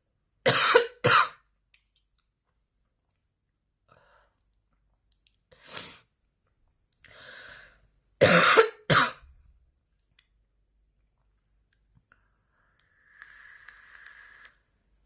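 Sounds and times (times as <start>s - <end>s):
woman coughing: 0.5s - 1.4s, 8.2s - 9.2s.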